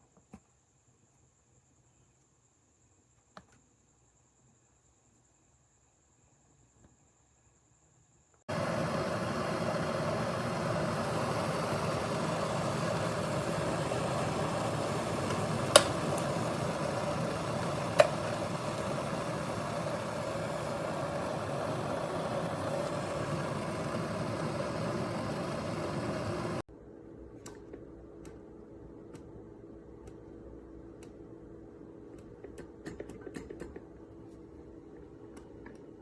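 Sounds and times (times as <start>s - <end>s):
kettle sharp clicks: 8.5s - 26.6s
electric kettle heating water: 8.5s - 26.7s.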